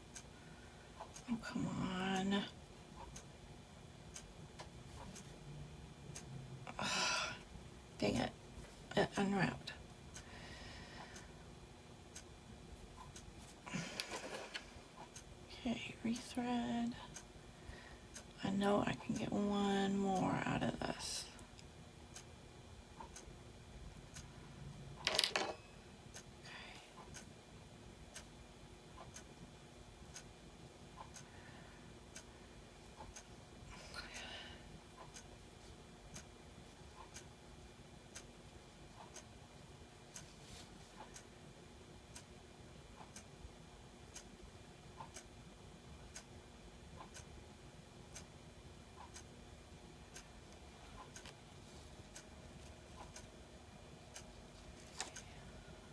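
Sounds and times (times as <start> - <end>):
clock ticking: 0.0 - 5.3, 6.0 - 6.8, 22.9 - 24.4, 28.1 - 31.4, 32.0 - 33.4, 34.0 - 35.4, 36.0 - 40.3, 41.0 - 55.9.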